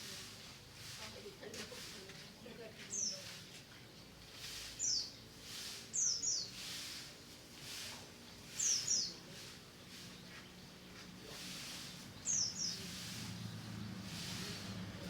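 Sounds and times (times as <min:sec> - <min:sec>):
bird chirping: 0:05.9 - 0:06.6, 0:08.5 - 0:15.0.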